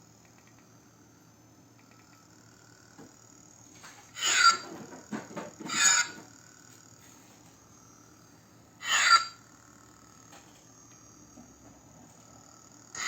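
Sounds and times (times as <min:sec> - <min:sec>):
toy lightsaber hum: 0:04.0 - 0:04.9, 0:05.5 - 0:06.5, 0:08.8 - 0:10.2.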